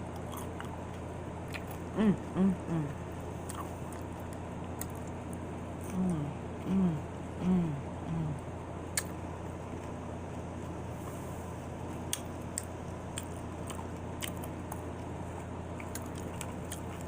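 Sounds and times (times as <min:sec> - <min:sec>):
chewing crisp chips: 0:00.0 - 0:01.9, 0:03.3 - 0:06.7, 0:11.9 - 0:17.0
steady low hum: 0:00.0 - 0:17.0
person humming mm: 0:01.9 - 0:03.1, 0:05.8 - 0:08.5.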